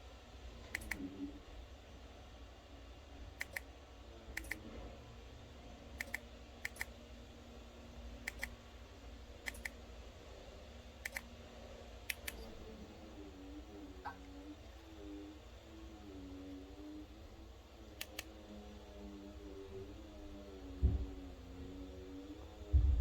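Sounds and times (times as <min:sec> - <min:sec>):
steady low hum: 0:00.0 - 0:23.0
sharp double clicks: 0:03.4 - 0:03.7, 0:04.4 - 0:04.6, 0:06.0 - 0:06.9, 0:08.2 - 0:08.6, 0:09.4 - 0:09.8, 0:11.0 - 0:11.3, 0:12.1 - 0:12.5, 0:18.0 - 0:18.3.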